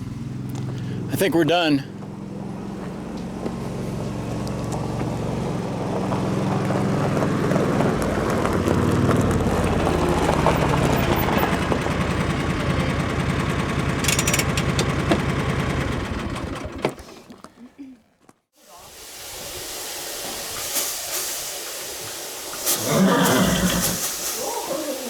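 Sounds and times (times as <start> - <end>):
engine humming: 0.0 - 17.6.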